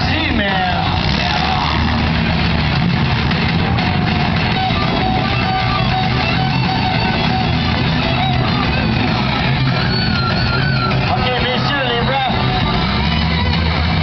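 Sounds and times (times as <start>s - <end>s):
rock music with electric guitar: 0.0s - 14.0s.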